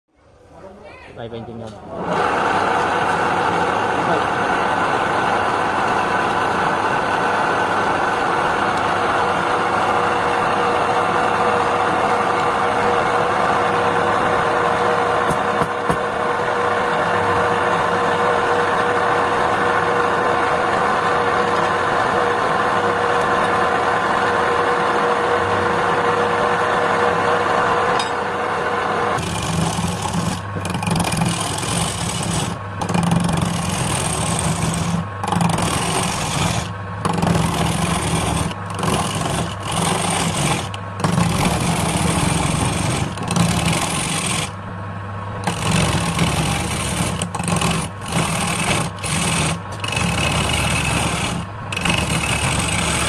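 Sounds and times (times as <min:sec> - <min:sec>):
power tool motor cutting wood: 0:29.2 - 0:44.6, 0:45.4 - 0:53.0.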